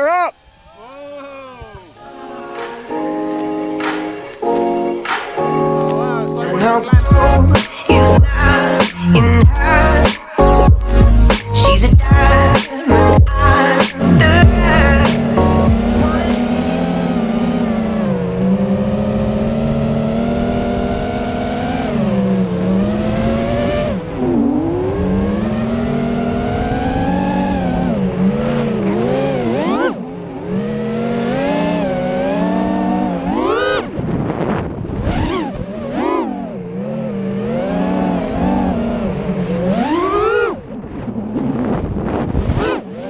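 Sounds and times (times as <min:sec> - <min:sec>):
quadcopter motors whining: 0:00.0 - 0:05.2.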